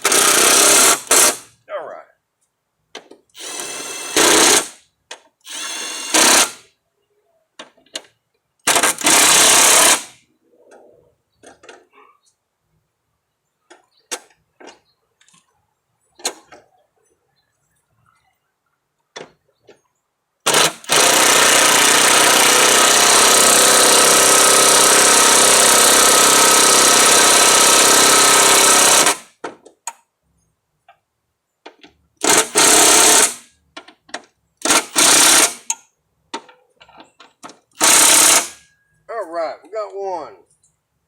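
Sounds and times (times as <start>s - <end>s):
impact wrench hammering: 20.5s - 29.2s, 32.2s - 33.5s, 34.6s - 35.7s, 37.8s - 38.6s.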